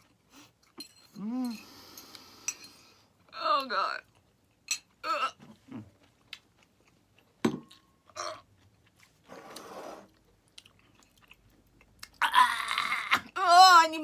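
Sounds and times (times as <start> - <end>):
person chewing: 4.1 - 9.3, 10.1 - 13.3
groans of disgust: 12.2 - 13.3.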